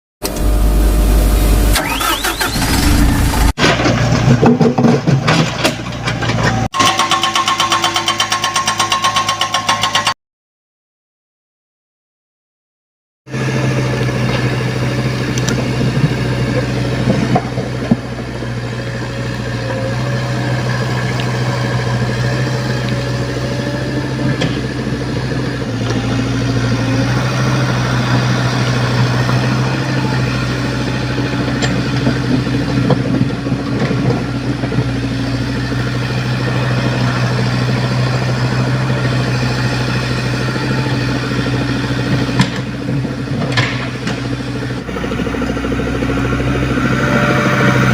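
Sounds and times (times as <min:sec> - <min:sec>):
excavator diesel engine running: 0:00.2 - 0:10.1, 0:13.3 - 0:47.9
sharp metallic knocks: 0:06.8 - 0:10.2.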